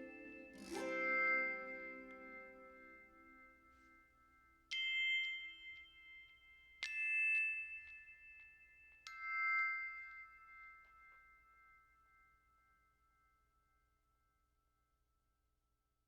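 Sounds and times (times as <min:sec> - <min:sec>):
bell-like chime notes: 0:00.0 - 0:12.4.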